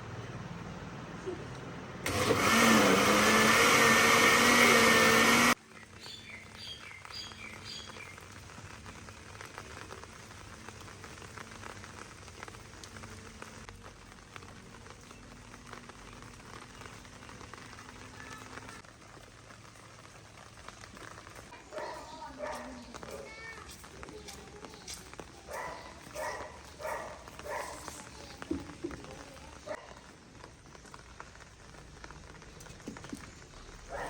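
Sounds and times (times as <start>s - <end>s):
motor running loudly: 2.0s - 5.6s
faint steady patter: 5.6s - 34.0s
bird chirps: 5.8s - 8.2s.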